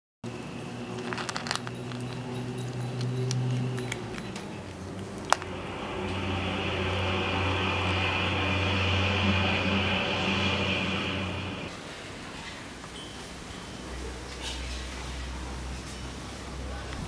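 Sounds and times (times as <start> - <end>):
low machine hum: 0.3 - 11.7.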